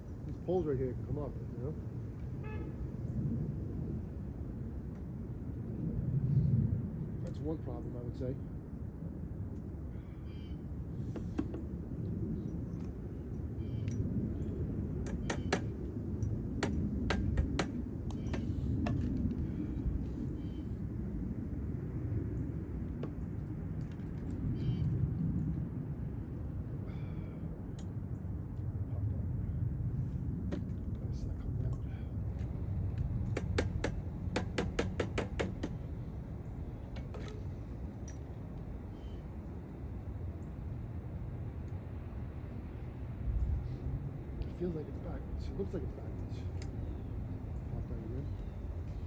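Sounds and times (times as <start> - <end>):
steady low rumble: 0.0 - 49.0
metal parts clicking and tapping: 15.1 - 19.3, 32.4 - 35.8, 36.9 - 38.2
metal frame clinks and clicks: 36.8 - 38.3.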